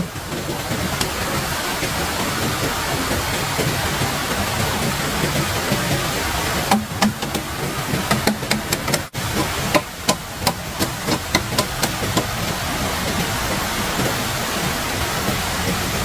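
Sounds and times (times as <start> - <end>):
steady rushing noise: 0.0 - 16.0
hammering knocks: 5.2 - 12.6.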